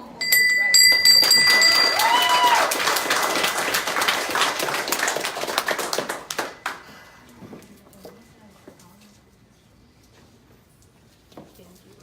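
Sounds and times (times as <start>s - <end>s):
small group applauding: 0.7s - 7.2s.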